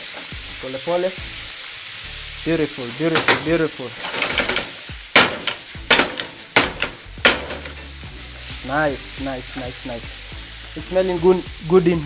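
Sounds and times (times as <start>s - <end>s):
meat and peppers sizzling: 0.0s - 12.0s
wooden spoon knocking on pan: 3.2s - 7.8s.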